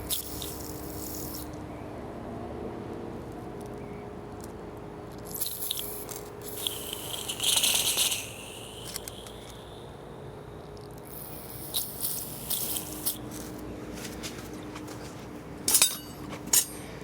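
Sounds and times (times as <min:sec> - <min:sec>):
aerosol spray hissing: 0:05.4 - 0:09.4, 0:11.2 - 0:13.3.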